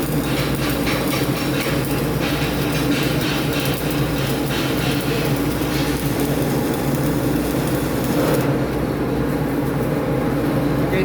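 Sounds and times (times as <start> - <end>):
welding arc crackling: 0.0 - 8.6
welding machine hum: 0.0 - 10.5.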